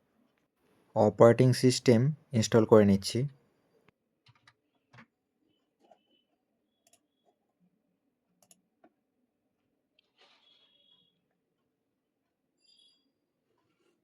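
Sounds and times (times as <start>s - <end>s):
mouse and keyboard clicks: 8.4s - 8.9s.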